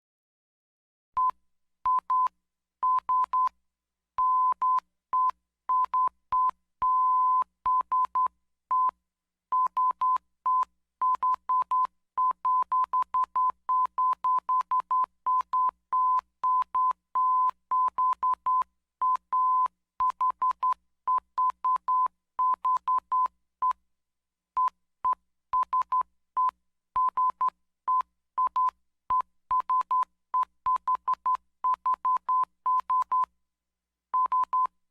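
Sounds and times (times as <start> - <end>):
morse code beeps: 34.2 - 34.7.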